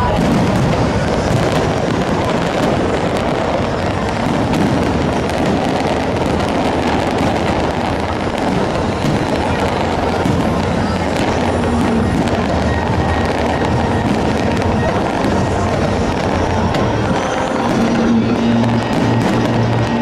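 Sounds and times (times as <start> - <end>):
fireworks popping and crackling: 0.0 - 20.0.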